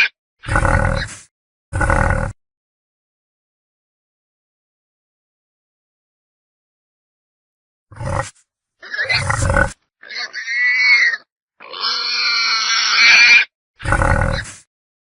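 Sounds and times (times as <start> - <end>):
wild boar squealing: 0.0 - 1.2, 8.0 - 14.6
wild boar grunting: 0.0 - 2.4, 7.9 - 10.6, 11.6 - 14.7.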